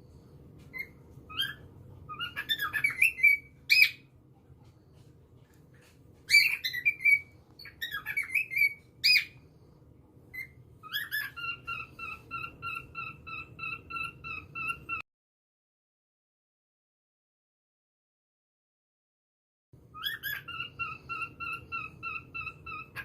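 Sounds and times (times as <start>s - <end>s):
bird sharp chirps: 0.7s - 4.0s
bird whistled notes: 0.7s - 4.0s, 6.3s - 9.4s.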